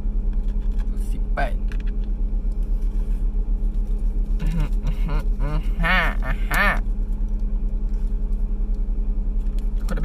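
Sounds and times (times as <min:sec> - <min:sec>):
pulsing low hum: 0:00.0 - 0:10.0
person humming or murmuring: 0:04.4 - 0:06.8.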